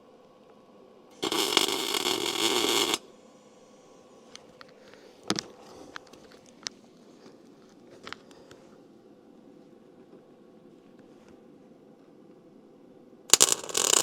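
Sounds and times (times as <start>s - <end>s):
welding arc crackling: 1.2s - 3.0s, 13.3s - 14.0s.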